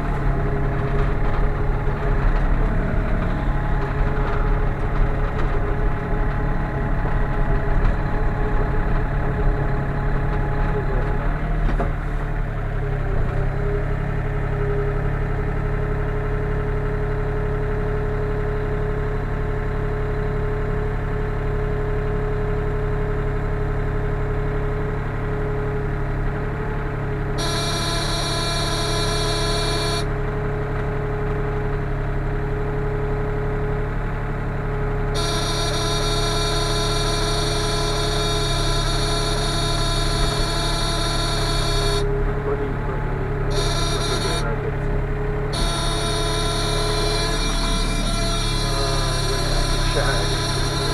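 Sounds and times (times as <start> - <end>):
diesel engine running: 0.0 - 50.9
high whine: 35.2 - 42.2, 43.5 - 44.7, 45.5 - 50.9.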